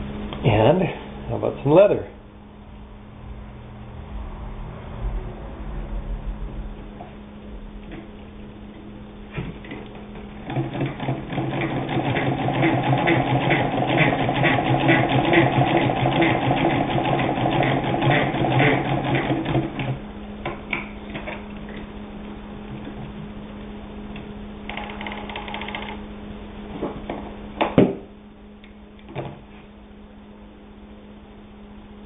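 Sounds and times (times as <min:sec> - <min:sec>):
sewing machine stitching: 0:09.6 - 0:20.0.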